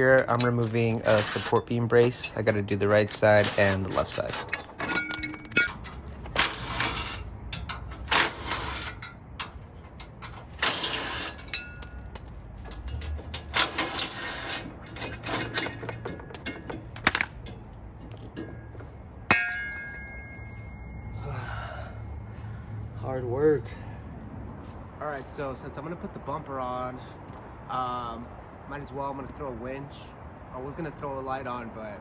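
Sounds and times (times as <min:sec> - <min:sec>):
small metallic knocks: 0:00.0 - 0:21.3.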